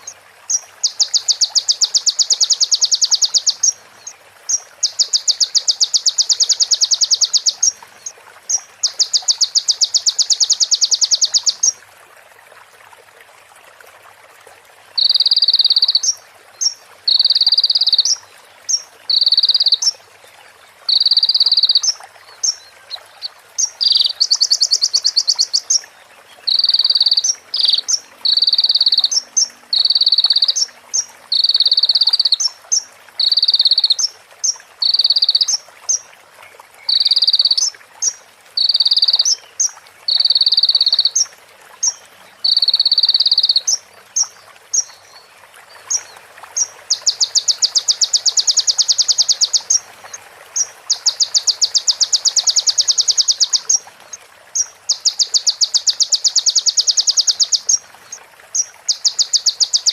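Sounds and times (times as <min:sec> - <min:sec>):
bird rapid trills: 0:04.5 - 0:07.8.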